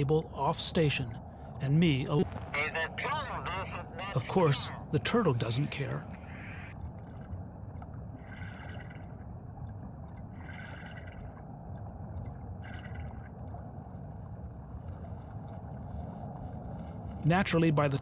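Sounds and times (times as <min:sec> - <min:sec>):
diver breathing bubbles: 0:08.1 - 0:09.3, 0:10.3 - 0:11.4.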